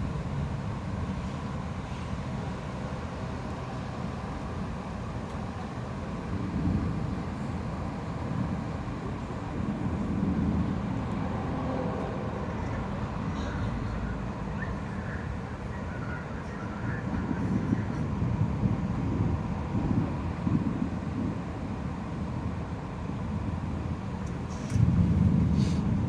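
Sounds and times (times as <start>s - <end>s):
distant thunder rumbling: 24.8s - 26.0s.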